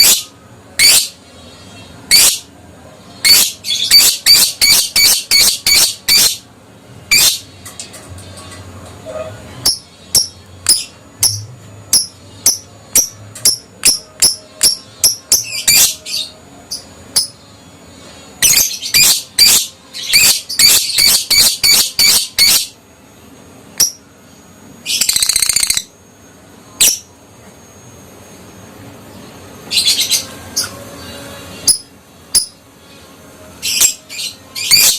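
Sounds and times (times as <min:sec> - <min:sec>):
lovebird chirping: 0:03.2 - 0:06.4, 0:09.6 - 0:17.4, 0:18.4 - 0:22.8
rapid bird trill: 0:03.2 - 0:06.4, 0:18.4 - 0:22.8.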